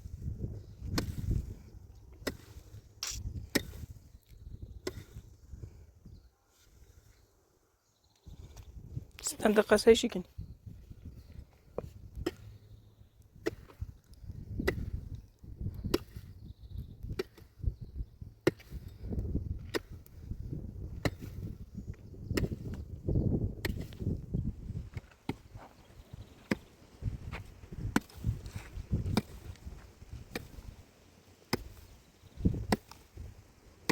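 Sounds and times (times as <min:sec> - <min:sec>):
axe chopping wood: 0:02.2 - 0:03.9, 0:13.4 - 0:15.0, 0:15.8 - 0:16.3, 0:18.4 - 0:18.9, 0:20.9 - 0:21.6, 0:22.3 - 0:22.8, 0:27.3 - 0:30.8, 0:31.4 - 0:33.9.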